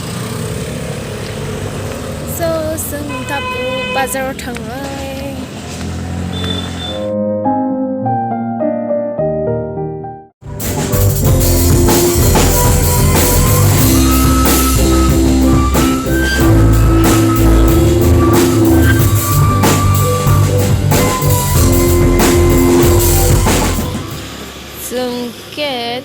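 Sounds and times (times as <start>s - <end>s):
music with drums and guitar: 10.4s - 24.3s.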